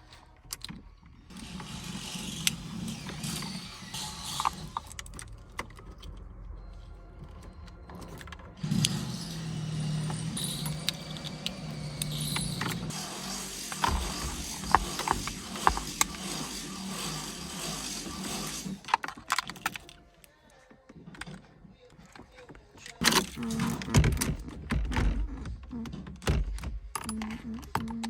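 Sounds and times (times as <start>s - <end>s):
wires rustling: 7.2s - 20.1s.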